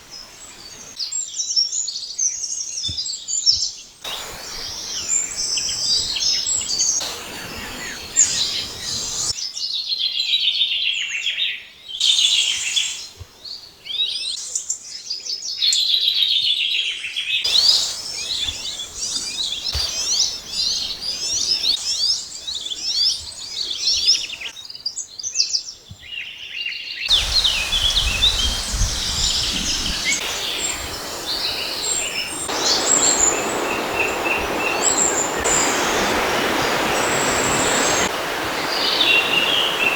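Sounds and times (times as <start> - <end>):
birds singing and calling: 2.2 - 9.7, 17.4 - 39.9.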